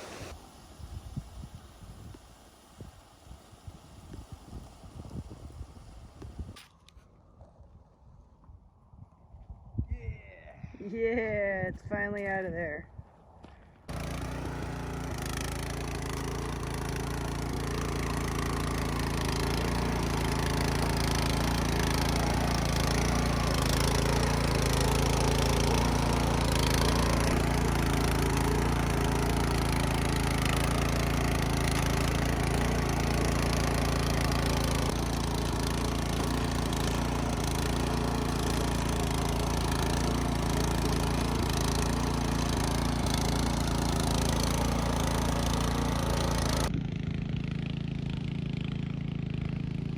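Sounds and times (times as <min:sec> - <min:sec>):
rototiller engine running: 0:00.0 - 0:00.4, 0:13.9 - 0:49.9.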